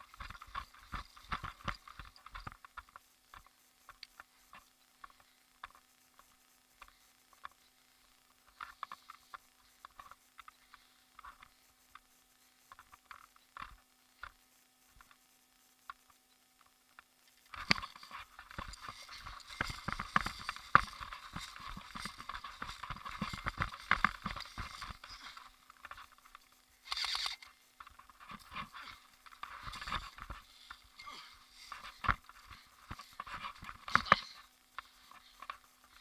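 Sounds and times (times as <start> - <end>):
footsteps through dry brush: 17.6 - 27.2.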